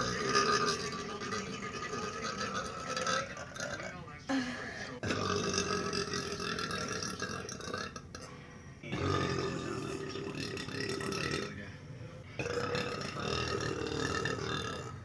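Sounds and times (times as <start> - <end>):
woman burping: 12.4 - 14.9.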